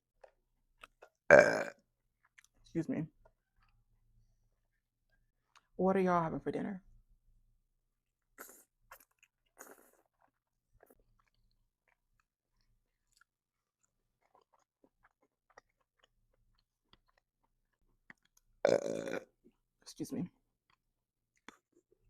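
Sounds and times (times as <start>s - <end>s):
person chewing food: 0.2s - 2.6s, 3.2s - 5.7s, 8.4s - 19.6s, 20.5s - 22.0s.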